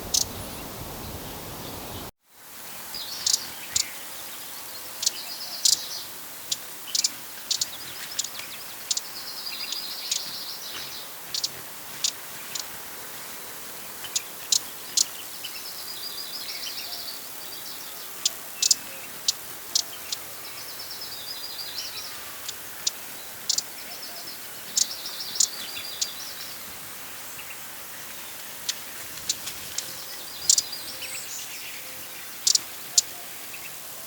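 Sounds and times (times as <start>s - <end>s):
hummingbird chattering: 0.0s - 2.1s, 18.2s - 20.3s, 21.9s - 23.7s, 29.8s - 30.8s, 32.4s - 33.1s
background hiss: 0.0s - 34.0s.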